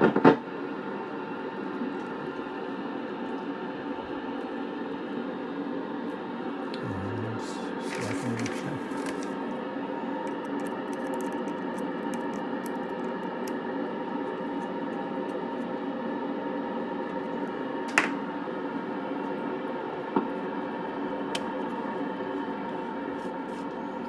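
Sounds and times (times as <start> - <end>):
radio static hiss: 6.8 - 9.6
small crackles: 7.8 - 15.8.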